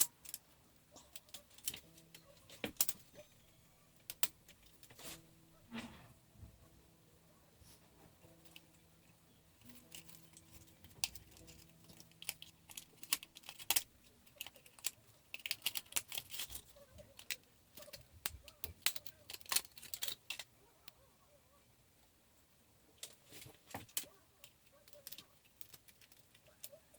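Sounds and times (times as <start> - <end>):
plastic and metal parts clicking: 0.0 - 3.1, 9.6 - 21.0, 23.0 - 26.9.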